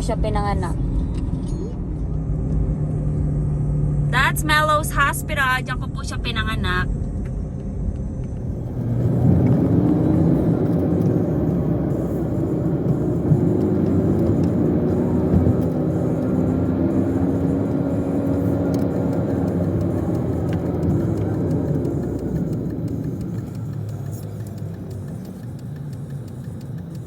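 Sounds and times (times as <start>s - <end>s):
car engine and road noise: 0.0s - 27.0s.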